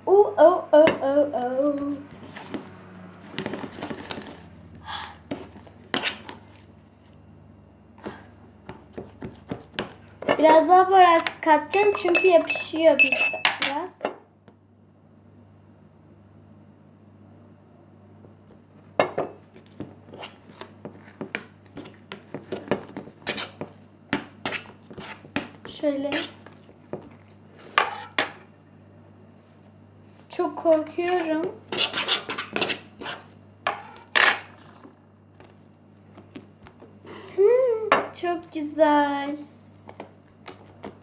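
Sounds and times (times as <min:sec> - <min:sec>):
utensil scraping a bowl: 0:26.0 - 0:26.5, 0:31.7 - 0:34.1.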